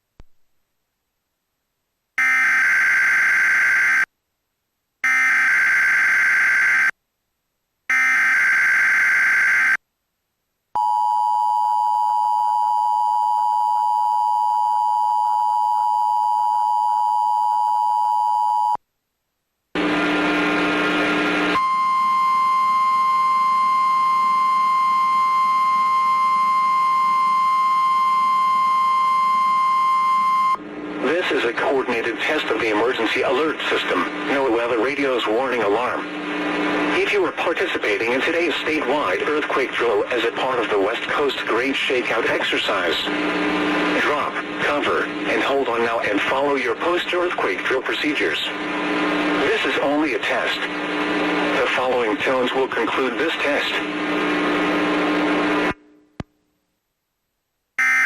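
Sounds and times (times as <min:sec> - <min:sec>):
steady warning alarm tone: 0:02.2 - 0:04.1, 0:05.0 - 0:06.9, 0:07.9 - 0:09.8, 0:21.0 - 0:31.3, 0:57.8 - 0:58.0
two-tone attention signal: 0:21.6 - 0:30.6, 0:57.8 - 0:58.0.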